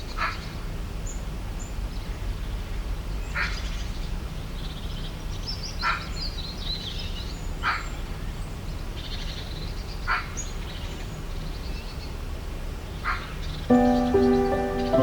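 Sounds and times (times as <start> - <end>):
birds chirping and trilling: 13.7 - 15.0.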